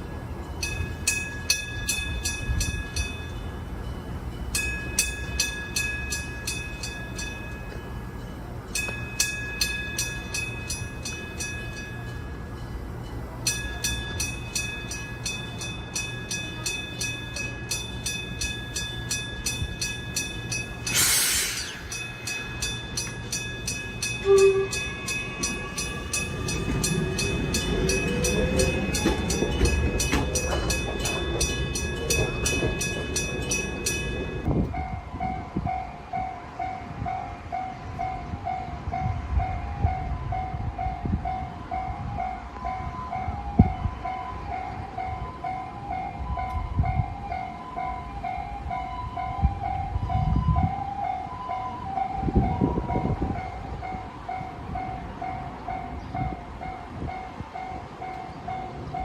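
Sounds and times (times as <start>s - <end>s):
railroad crossing bells ringing: 0.0s - 59.0s
train rumbling with wheel clatter: 0.0s - 59.0s
short hiss: 20.9s - 21.9s
brief loud tone: 24.2s - 24.8s.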